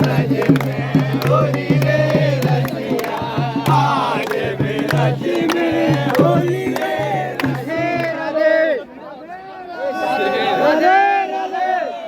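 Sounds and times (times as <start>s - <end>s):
sharp percussion hits: 0.0s - 8.1s
drum beat: 0.0s - 8.2s.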